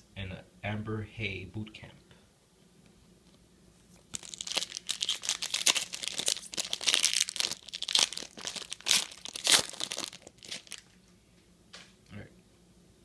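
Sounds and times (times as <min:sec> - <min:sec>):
wrapper tearing and crinkling: 0:04.0 - 0:11.0.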